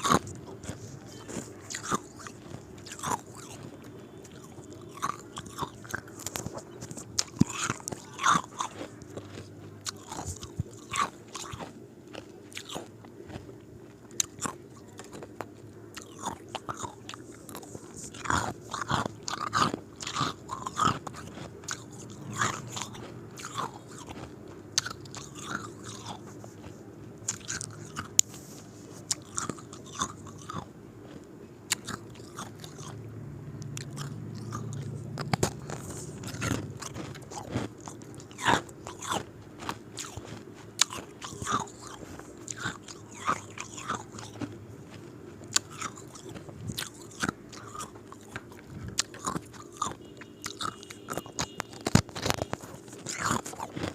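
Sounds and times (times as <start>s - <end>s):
ice cubes being chewed: 0.0s - 33.0s, 33.6s - 53.9s.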